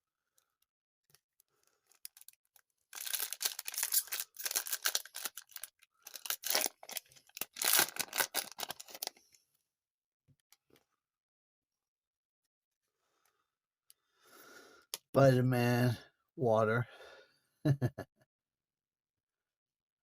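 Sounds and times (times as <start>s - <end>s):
card pack wrapper tearing and crinkling: 1.9s - 9.2s.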